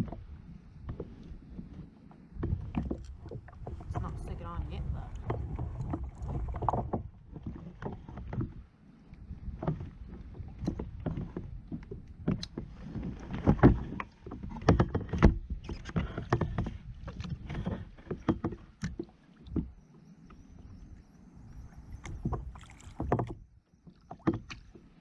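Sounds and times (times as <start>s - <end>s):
gear knocking on kayak: 0.0s - 8.6s, 9.2s - 20.8s, 21.9s - 24.9s
low rumble: 3.0s - 7.4s.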